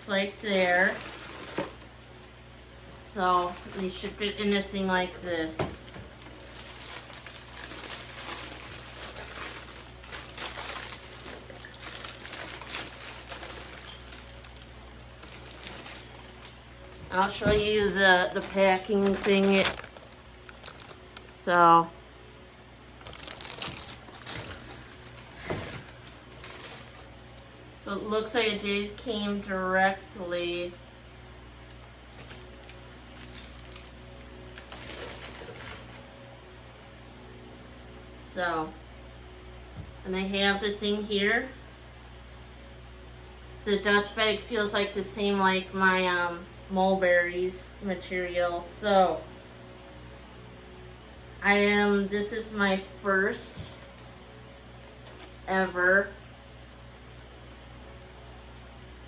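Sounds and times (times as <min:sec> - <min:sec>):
packaging rustling and crinkling: 0:00.4 - 0:04.2, 0:05.2 - 0:21.5, 0:22.9 - 0:27.5, 0:31.7 - 0:36.2, 0:53.5 - 0:55.5.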